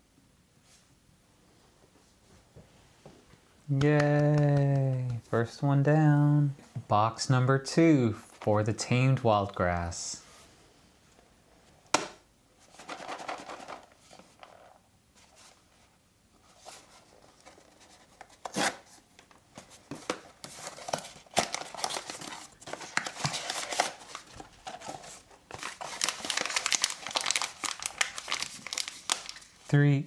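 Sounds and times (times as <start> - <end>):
packaging rustling and tearing: 16.6 - 29.7.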